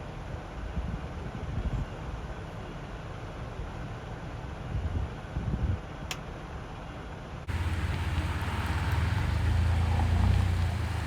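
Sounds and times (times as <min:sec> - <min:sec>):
low vehicle rumble: 0:07.5 - 0:11.0
rush of vehicles and water: 0:07.5 - 0:11.0.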